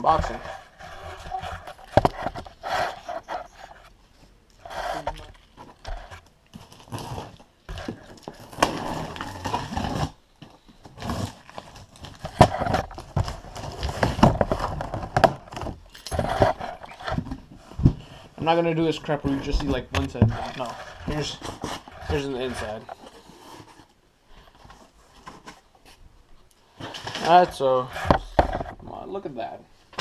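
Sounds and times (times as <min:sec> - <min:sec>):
packaging tearing and rustling: 0:06.5 - 0:10.2, 0:10.9 - 0:17.2
cardboard box being opened: 0:06.6 - 0:10.2, 0:10.9 - 0:18.2, 0:20.2 - 0:23.9.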